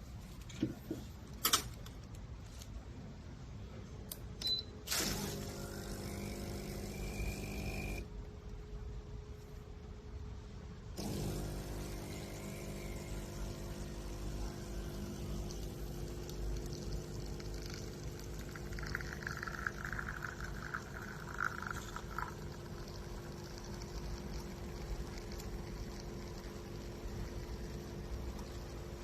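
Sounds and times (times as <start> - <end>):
espresso pump buzzing hum: 4.9 - 8.1, 11.0 - 29.0.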